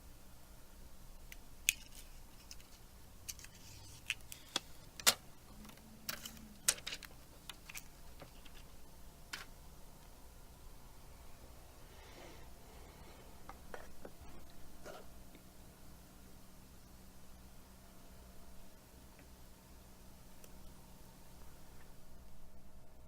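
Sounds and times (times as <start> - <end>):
small parts and tools clicking: 1.3 - 8.7.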